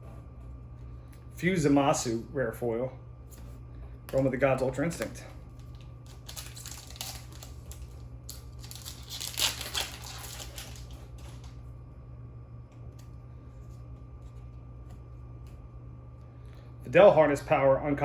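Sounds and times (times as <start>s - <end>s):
card pack wrapper tearing and crinkling: 5.6s - 11.5s.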